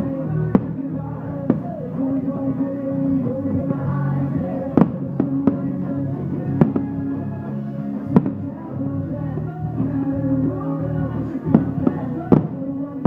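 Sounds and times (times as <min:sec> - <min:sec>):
music with long held tones: 0:00.0 - 0:13.0
fireworks bangs: 0:00.4 - 0:01.9, 0:04.6 - 0:07.2, 0:08.1 - 0:08.5, 0:11.5 - 0:13.0.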